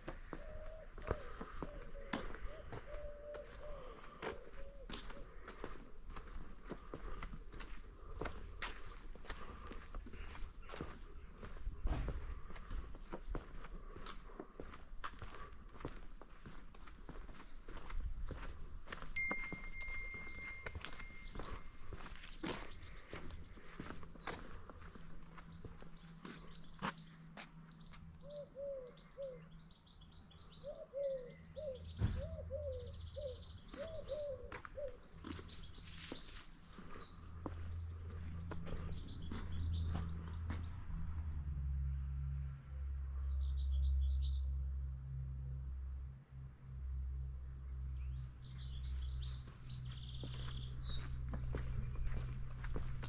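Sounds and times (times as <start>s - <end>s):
footsteps: 0.0s - 28.1s, 33.7s - 40.9s, 49.5s - 53.0s
small songbirds singing: 15.7s - 40.6s, 47.5s - 53.0s.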